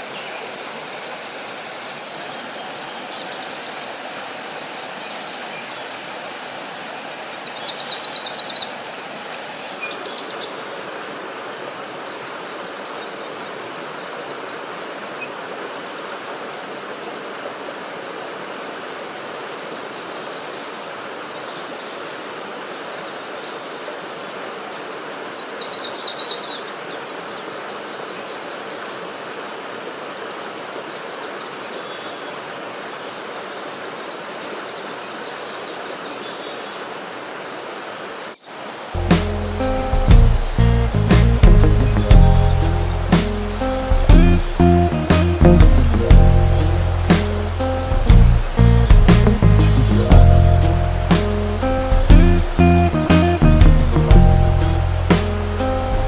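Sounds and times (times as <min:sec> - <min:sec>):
stream flowing: 0:00.0 - 0:56.0
birds chirping: 0:38.4 - 0:56.0.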